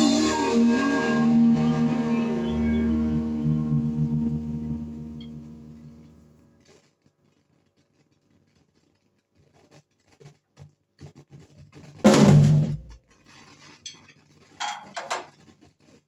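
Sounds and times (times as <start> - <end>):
crash cymbal and bass drum hit: 0.0 - 6.0.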